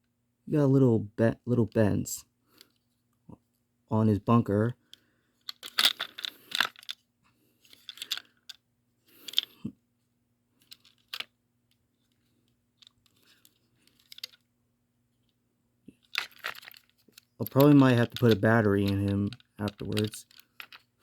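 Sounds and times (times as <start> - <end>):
packaging rustling: 16.2 - 16.9.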